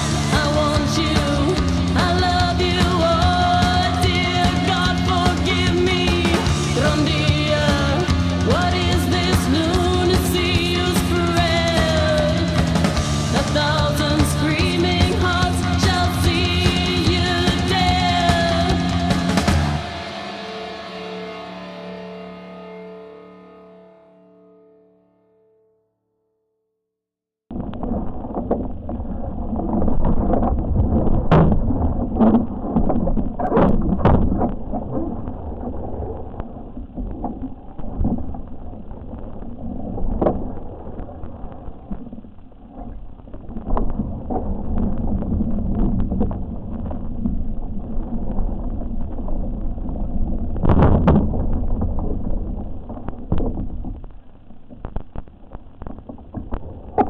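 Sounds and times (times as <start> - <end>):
water rushing along a boat hull: 27.5 - 57.0
sharp knocks or splashes: 29.7 - 34.6, 50.6 - 52.3.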